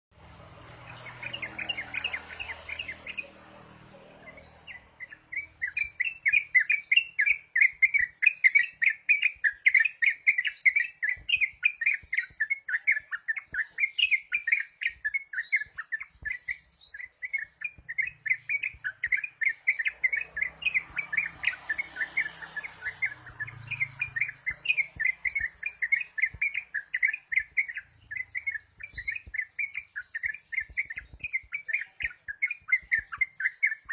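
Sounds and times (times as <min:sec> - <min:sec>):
bird singing rapid chirping notes: 0:00.1 - 0:33.9.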